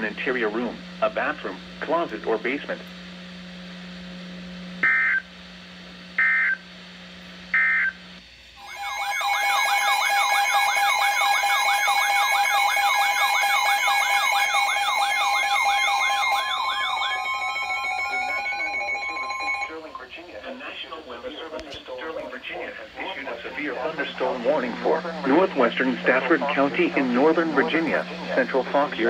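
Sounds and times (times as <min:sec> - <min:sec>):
screeching digital data tones: 0:08.6 - 0:19.8
warbling electronic alert tone: 0:08.6 - 0:19.8.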